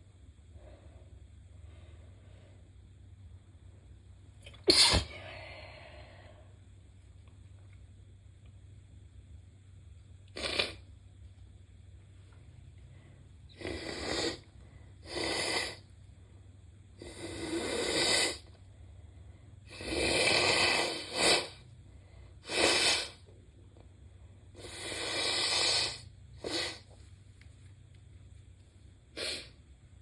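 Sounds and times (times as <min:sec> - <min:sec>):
stuffed-up sneezes: 0:04.5 - 0:05.2
nose blowing: 0:04.6 - 0:05.2, 0:10.4 - 0:10.8, 0:13.5 - 0:14.4, 0:15.0 - 0:15.8, 0:17.0 - 0:18.5, 0:19.7 - 0:21.6, 0:22.4 - 0:23.2, 0:24.6 - 0:26.9, 0:29.2 - 0:29.6.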